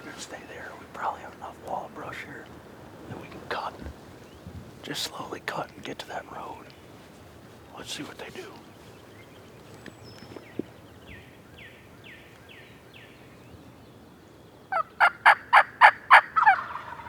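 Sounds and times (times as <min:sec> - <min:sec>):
turkey gobbling: 0:14.7 - 0:17.0.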